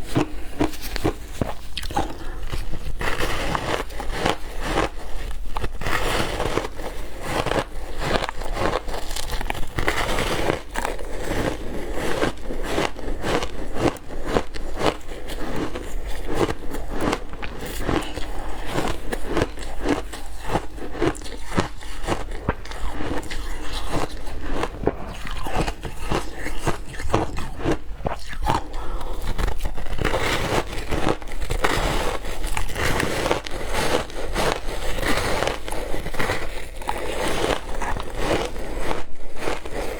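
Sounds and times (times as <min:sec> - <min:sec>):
ice crunching between teeth: 0:00.0 - 0:39.9.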